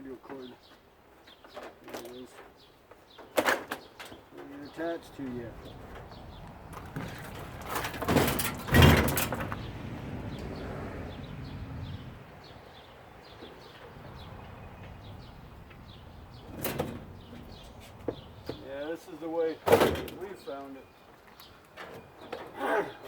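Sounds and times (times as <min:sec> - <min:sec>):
scraping rattle: 0:05.6 - 0:09.7, 0:14.1 - 0:18.6
handling of machine parts: 0:06.7 - 0:09.6.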